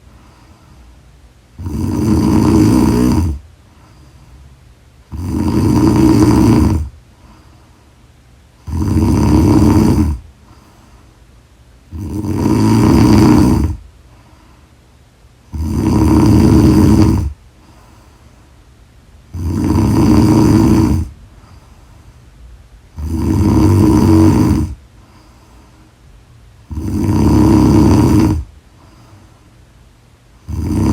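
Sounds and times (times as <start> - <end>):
quiet breathing: 0.0 - 30.9
woman snoring loudly: 1.6 - 3.4, 5.1 - 6.9, 8.6 - 10.2, 11.9 - 13.8, 15.5 - 17.4, 19.3 - 21.2, 23.0 - 24.8, 26.6 - 28.5, 30.4 - 30.9.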